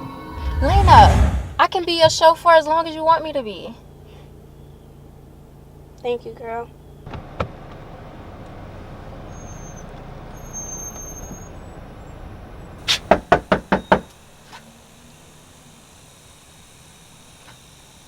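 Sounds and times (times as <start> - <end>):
car road noise: 0.3 - 17.4
knuckle knocking on door: 13.0 - 14.1.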